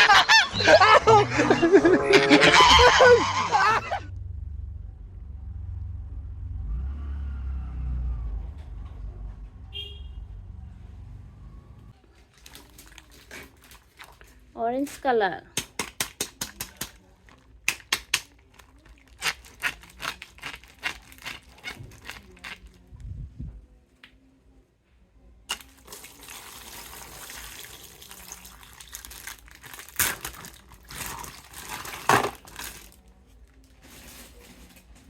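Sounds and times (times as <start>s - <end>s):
plastic wrap crinkling and tearing: 12.2s - 14.5s, 16.4s - 22.9s, 25.5s - 35.0s
plastic packaging clicks and snaps: 17.6s - 21.4s.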